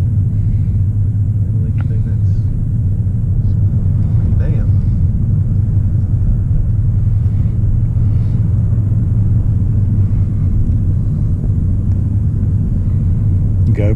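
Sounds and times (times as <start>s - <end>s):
moving car rumble: 0.0s - 13.9s.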